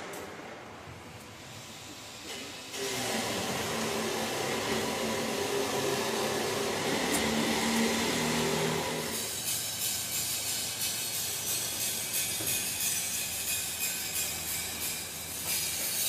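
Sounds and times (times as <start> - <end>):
power tool whirring: 2.7 - 9.5.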